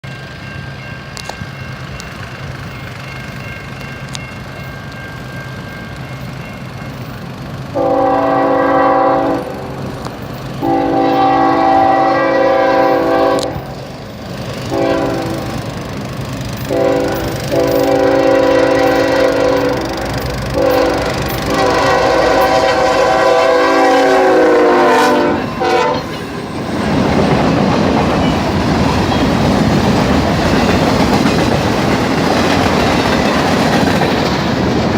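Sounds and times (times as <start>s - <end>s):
train wheels rumbling on rail: 0.0s - 34.9s
locomotive air horn blasts: 7.8s - 9.8s, 10.6s - 13.8s, 14.7s - 15.6s, 16.7s - 26.1s.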